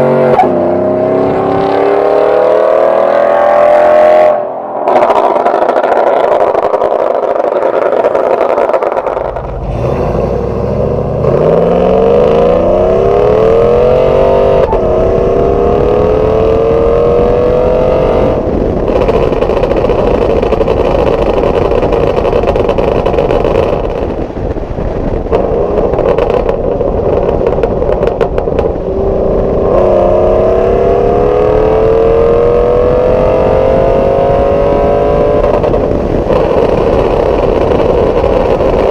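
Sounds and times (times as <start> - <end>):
pickup truck exhaust accelerating: 0.0 - 38.9
exhaust pops and crackles: 4.8 - 9.8, 18.1 - 30.8, 33.1 - 38.9.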